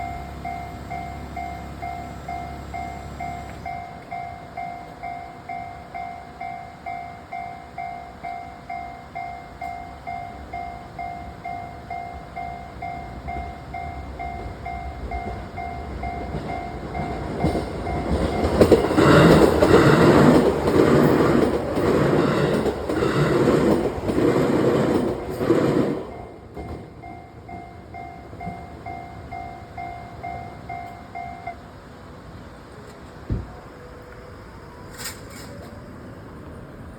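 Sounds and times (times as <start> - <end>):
level crossing warning bell: 0.0 - 32.6
train wheels clacking: 13.2 - 31.3.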